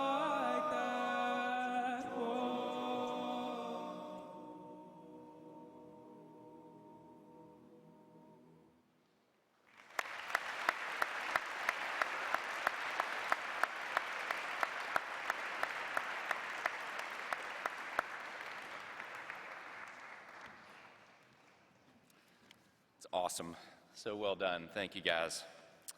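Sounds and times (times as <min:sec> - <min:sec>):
loud close clapping: 0:09.6 - 0:21.8
audience applause: 0:09.7 - 0:21.6.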